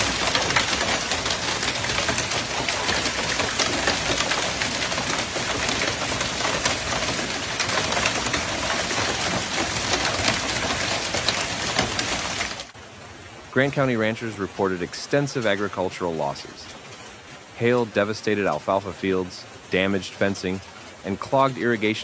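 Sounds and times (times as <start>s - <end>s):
hailstones clattering on hard surface: 0.0s - 12.7s
rushing storm noise: 0.0s - 22.0s.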